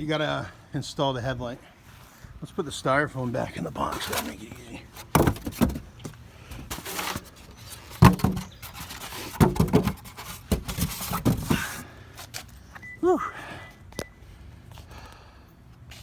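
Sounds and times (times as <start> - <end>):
styrofoam and cardboard rustling: 3.3 - 12.5.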